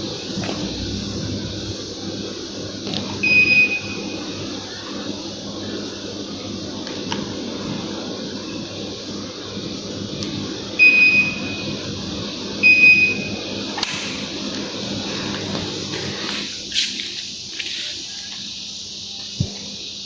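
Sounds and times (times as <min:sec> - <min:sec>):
air conditioner blowing: 0:00.0 - 0:20.0.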